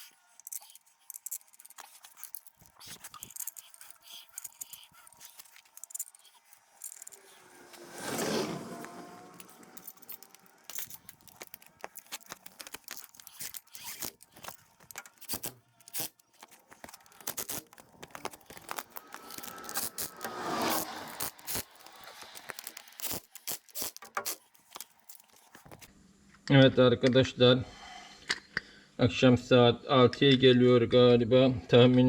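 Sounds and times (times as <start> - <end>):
tools clicking and knocking on metal: 0.0 - 7.4, 8.8 - 20.4
metal scraping: 0.0 - 25.9.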